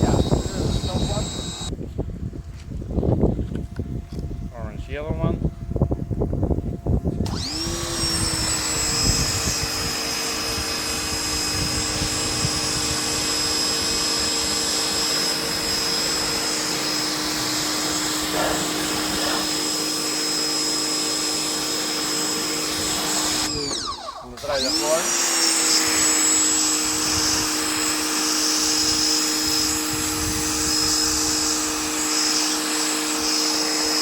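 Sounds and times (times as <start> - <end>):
pressure washer motor whining: 0.0 - 1.7, 7.2 - 34.0
water jet hissing: 9.9 - 25.2.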